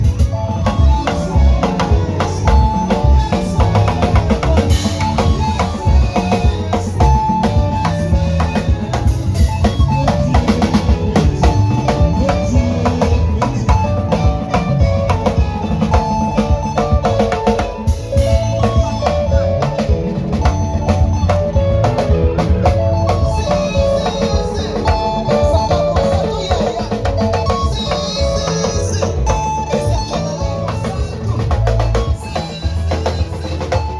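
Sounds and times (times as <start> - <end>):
drum kit kick and snare: 0.0 - 33.9
held bass notes: 0.0 - 33.9.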